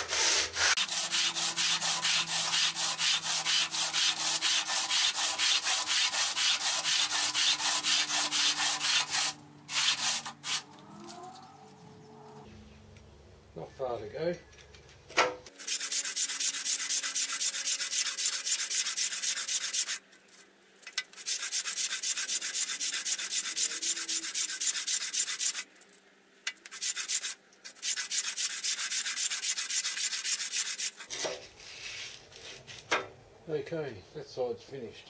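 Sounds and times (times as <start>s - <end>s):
hand sanding metal: 0.0s - 10.7s, 15.6s - 20.0s, 21.1s - 25.7s, 26.6s - 31.2s.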